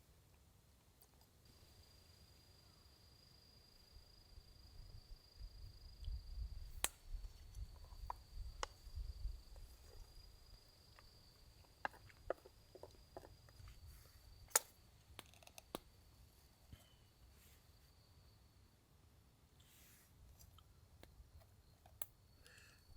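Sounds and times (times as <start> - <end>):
high-pitched insect trill: 1.5 - 16.0.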